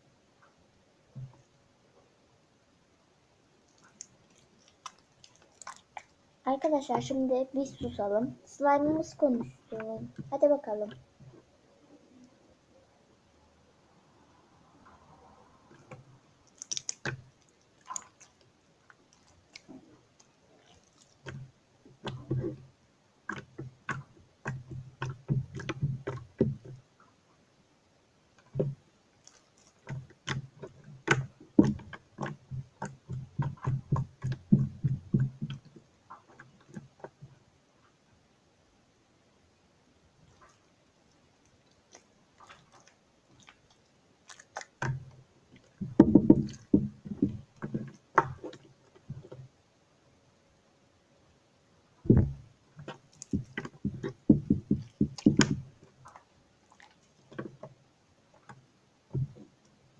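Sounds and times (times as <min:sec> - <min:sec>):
slime squelching and popping: 0:03.7 - 0:07.1, 0:15.7 - 0:22.6, 0:23.2 - 0:26.8, 0:28.4 - 0:37.2, 0:41.4 - 0:49.3, 0:52.1 - 0:57.4.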